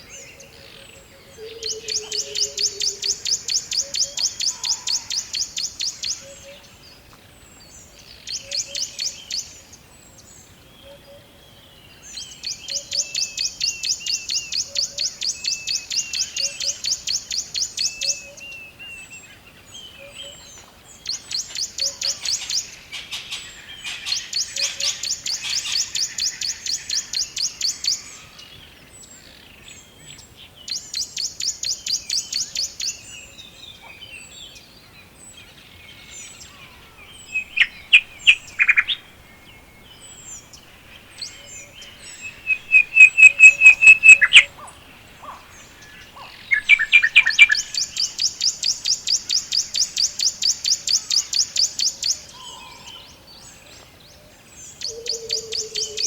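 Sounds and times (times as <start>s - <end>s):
songbirds singing: 0.0s - 56.0s
lower bird trills: 36.4s - 53.0s
high fast bird trill: 36.8s - 39.8s, 41.0s - 45.4s, 46.4s - 47.9s.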